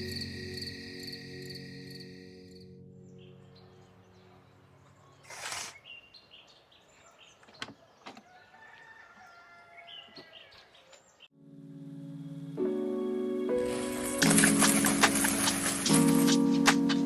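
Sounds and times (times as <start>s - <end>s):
small birds chirping: 3.1s - 8.5s, 9.2s - 11.3s.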